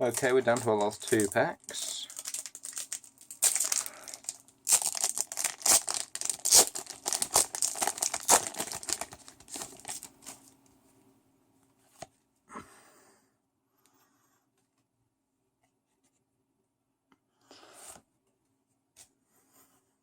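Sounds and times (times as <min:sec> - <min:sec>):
foil wrapper tearing and crinkling: 0:00.1 - 0:10.5.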